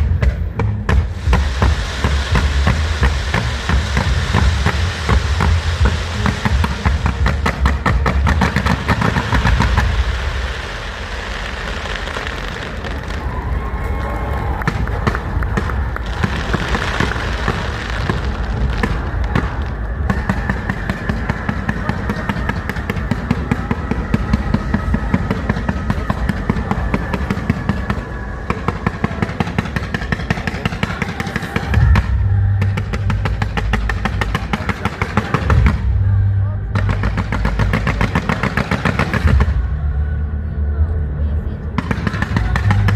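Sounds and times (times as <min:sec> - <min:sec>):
fireworks bangs and crackle: 0:00.0 - 0:39.8, 0:41.8 - 0:42.9
music: 0:00.0 - 0:42.9.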